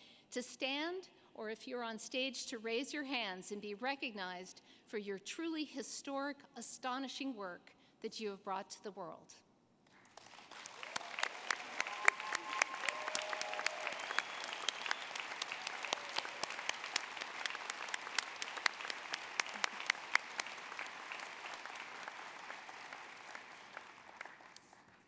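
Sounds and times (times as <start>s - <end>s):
audience applauding: 10.0s - 25.0s.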